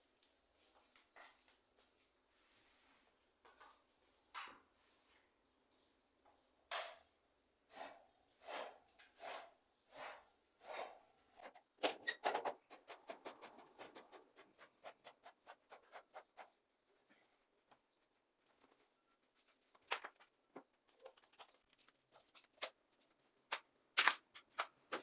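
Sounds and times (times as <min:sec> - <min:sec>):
scrubbing strokes on a surface: 0:12.7 - 0:16.6.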